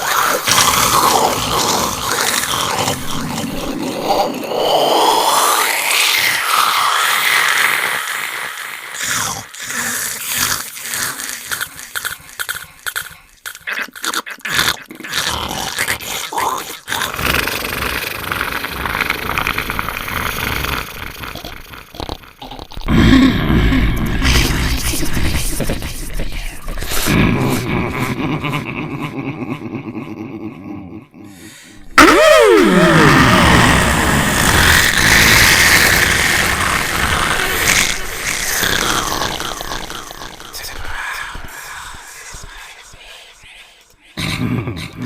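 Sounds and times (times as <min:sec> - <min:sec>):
harsh distorted hissing: 0:31.7 - 0:43.4.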